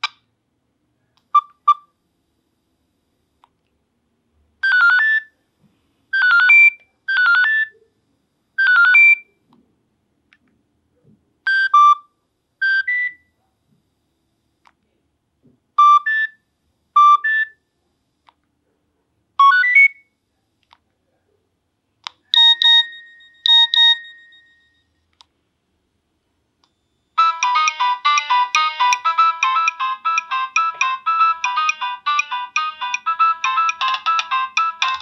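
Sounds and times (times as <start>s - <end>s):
electronic phone ringtone melody: 4.6s - 5.3s, 6.2s - 7.7s, 22.4s - 24.7s, 27.2s - 35.0s.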